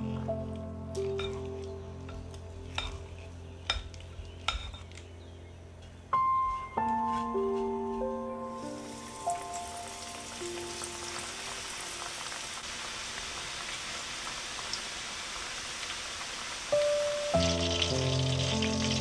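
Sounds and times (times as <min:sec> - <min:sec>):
background music: 0:00.0 - 0:12.3, 0:16.8 - 0:19.0
chicken sizzling in oil: 0:08.5 - 0:19.0.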